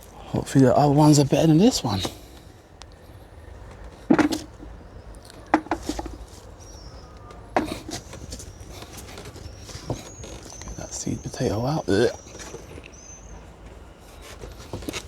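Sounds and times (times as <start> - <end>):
soil scuffing and rustling: 3.6 - 15.0.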